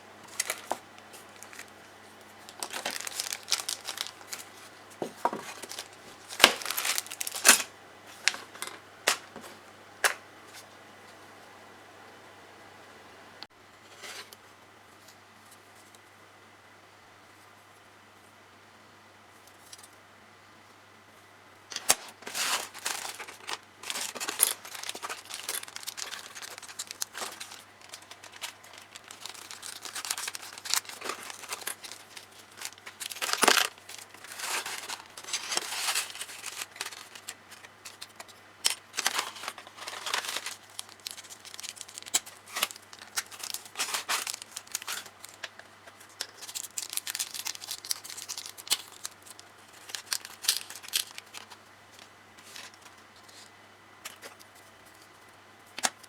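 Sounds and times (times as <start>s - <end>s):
plastic packaging crinkling: 0.2s - 9.5s, 21.7s - 53.4s.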